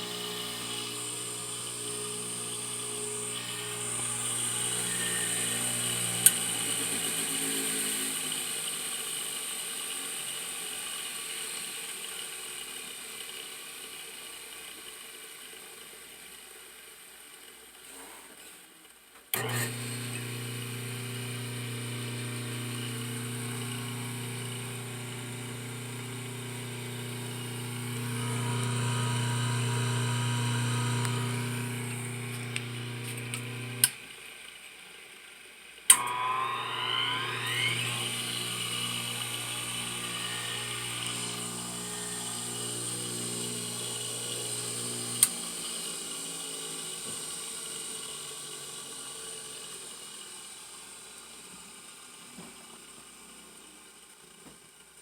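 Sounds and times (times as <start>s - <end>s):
lathe motor humming: 0.0s - 8.0s, 19.4s - 34.0s, 35.9s - 47.4s
motor winding up with rising whine: 0.0s - 10.5s, 19.4s - 34.1s, 35.9s - 50.8s.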